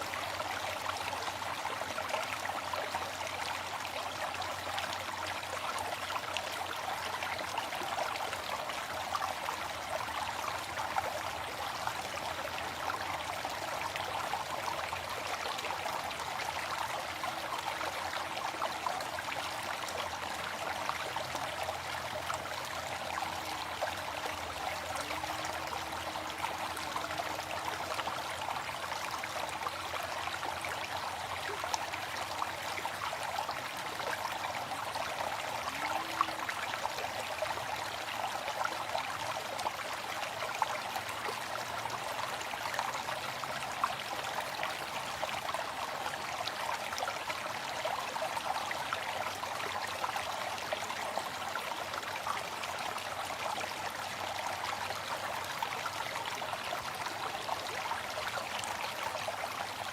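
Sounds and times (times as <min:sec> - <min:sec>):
small water splashes: 0:42.5 - 0:45.9.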